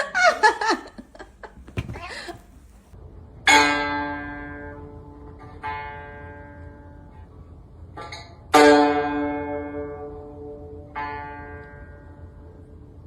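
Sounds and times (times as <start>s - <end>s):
plucked string notes: 8.0s - 12.3s.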